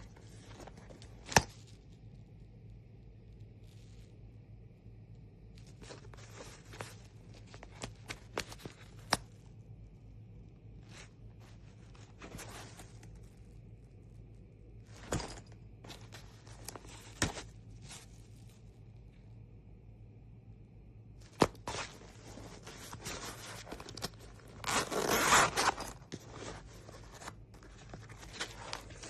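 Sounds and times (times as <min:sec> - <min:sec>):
backpack rustling and scraping: 0:10.8 - 0:13.2, 0:14.8 - 0:18.1, 0:21.2 - 0:29.0.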